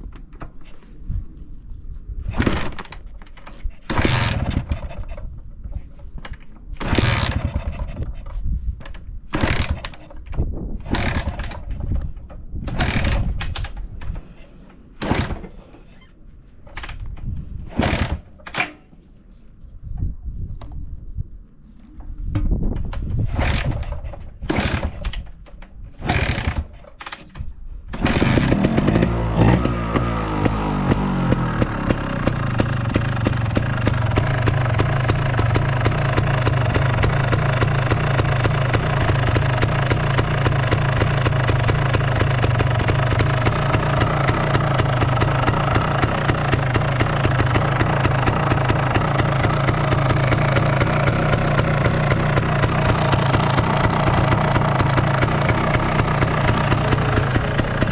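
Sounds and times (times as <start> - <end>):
two-stroke motorcycle engine starting: 3.9 - 5.2, 6.8 - 8.2, 9.4 - 10.1, 10.8 - 11.9, 12.6 - 13.6, 17.7 - 18.3, 23.2 - 25.2, 26.0 - 26.8, 28.0 - 57.9.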